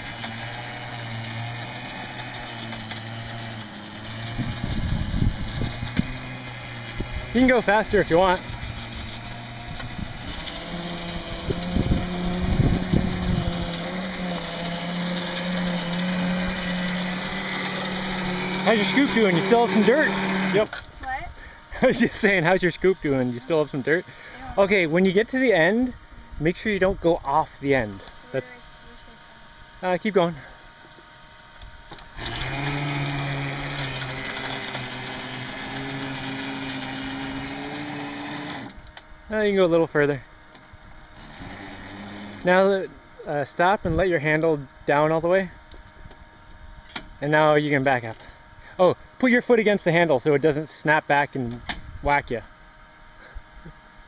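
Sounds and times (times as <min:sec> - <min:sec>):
bulldozer engine under load: 0:00.0 - 0:20.8, 0:32.1 - 0:38.8.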